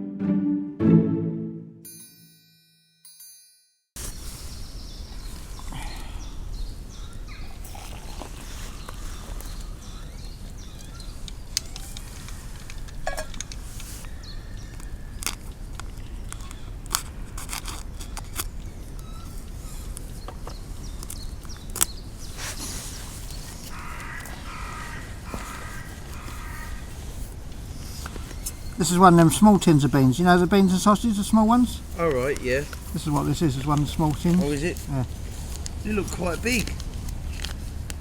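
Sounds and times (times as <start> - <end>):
camp cooking kit clicking: 11.2 - 13.9, 14.6 - 19.1, 20.0 - 22.0.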